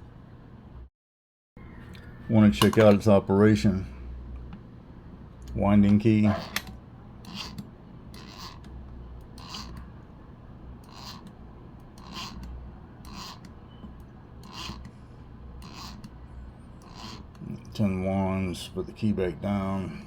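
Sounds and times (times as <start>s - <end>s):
camera winding ratchet rasp: 6.4s - 9.9s, 10.8s - 13.6s, 14.4s - 14.9s, 15.6s - 16.2s, 16.8s - 17.4s.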